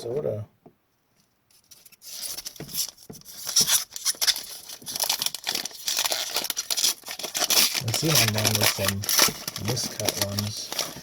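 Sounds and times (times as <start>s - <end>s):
wrapper crinkling and tearing: 1.7s - 11.0s.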